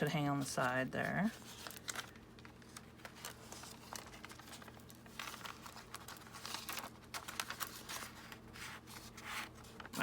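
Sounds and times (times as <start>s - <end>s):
paper rustling and crinkling: 0.0s - 10.0s.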